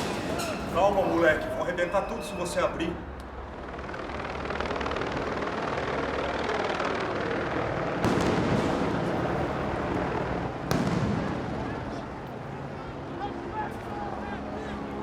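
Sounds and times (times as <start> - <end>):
protest crowd din: 0.0 - 3.3
loud bangs: 0.0 - 4.2, 8.0 - 12.2.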